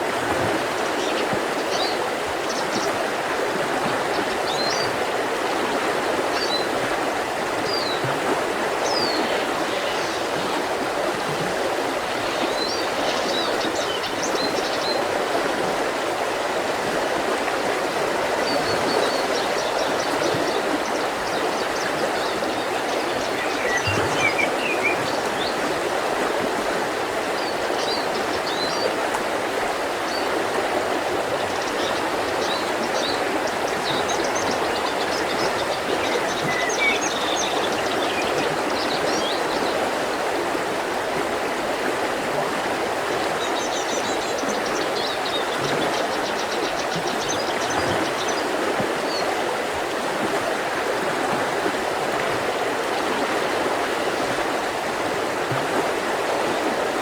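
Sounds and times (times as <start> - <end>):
river rushing: 0.0 - 57.0.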